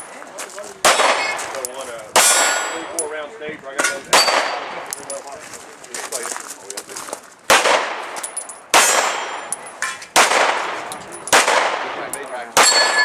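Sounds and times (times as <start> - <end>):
echoing gunshots: 0.8 - 1.5, 2.1 - 2.8, 4.1 - 4.9, 7.5 - 9.5, 10.1 - 13.0
metallic ring of steel targets: 2.2 - 3.1, 3.8 - 5.1, 8.2 - 10.1, 12.1 - 13.0.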